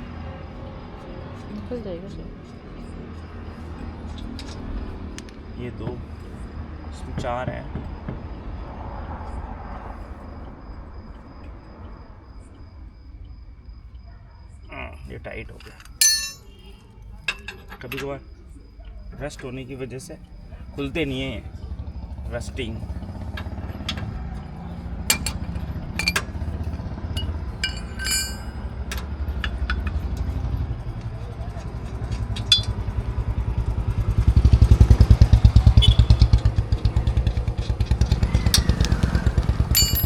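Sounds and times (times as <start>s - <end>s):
wheel spanner clicking on nuts: 15.6s - 16.4s, 25.1s - 26.4s, 27.2s - 30.1s, 32.3s - 32.8s, 39.8s - 40.0s
ringing metallic clink: 15.6s - 16.5s, 25.1s - 25.4s, 26.0s - 26.3s, 27.2s - 28.6s, 32.5s - 32.7s, 39.8s - 40.0s.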